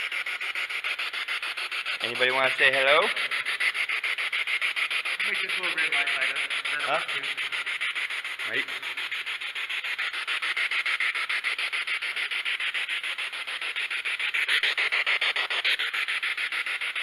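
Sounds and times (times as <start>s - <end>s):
pulsing radio static: 1.9s - 3.8s, 5.0s - 9.0s.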